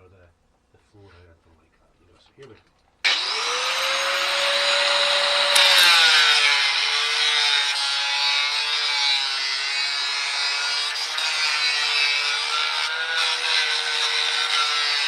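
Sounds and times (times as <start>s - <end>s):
angle grinder cutting metal: 3.1s - 15.0s.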